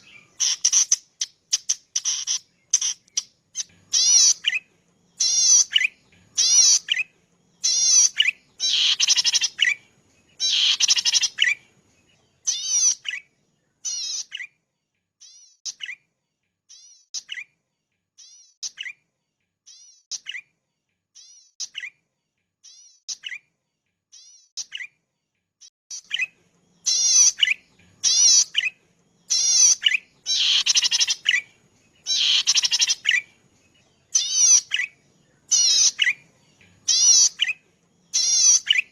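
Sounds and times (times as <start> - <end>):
bird singing buzzy trilled notes: 0.0 - 14.5, 25.9 - 38.9.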